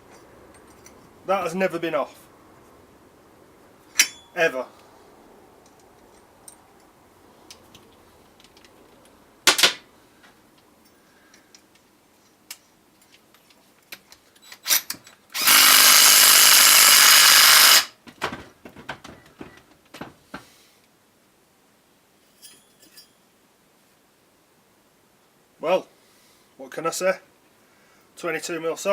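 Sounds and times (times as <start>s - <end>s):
tool and parts handling clicks: 3.9s - 4.3s
cordless impact wrench: 14.6s - 18.0s.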